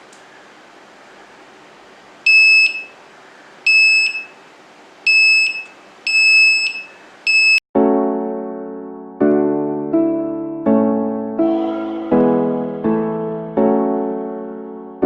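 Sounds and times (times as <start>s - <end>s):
alarm buzzer beeping: 2.3s - 3.0s, 3.7s - 4.4s, 5.1s - 7.6s
electric piano music: 7.8s - 15.0s.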